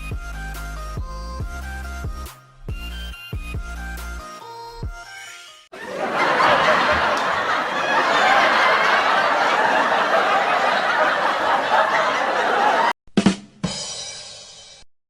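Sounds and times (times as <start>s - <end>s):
crowd laughing: 5.8s - 13.0s.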